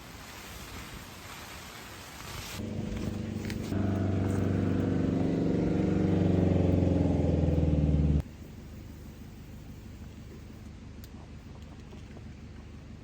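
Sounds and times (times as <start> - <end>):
motor humming: 2.6 - 8.2.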